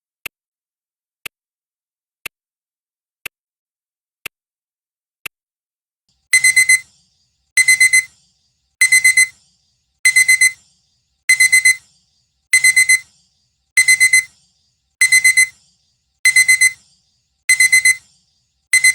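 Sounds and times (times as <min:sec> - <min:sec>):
digital alarm clock beeping: 0:06.3 - 0:06.9, 0:07.6 - 0:08.2, 0:08.8 - 0:09.4, 0:10.0 - 0:10.6, 0:11.3 - 0:11.9, 0:12.5 - 0:13.1, 0:13.8 - 0:14.4, 0:15.0 - 0:15.6, 0:16.2 - 0:16.8, 0:17.5 - 0:18.1.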